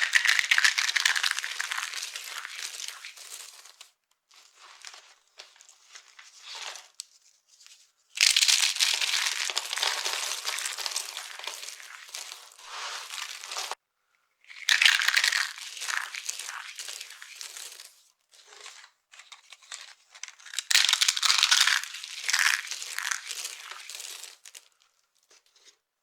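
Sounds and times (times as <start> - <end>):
brittle block crunching: 8.2 - 13.8, 20.5 - 24.4.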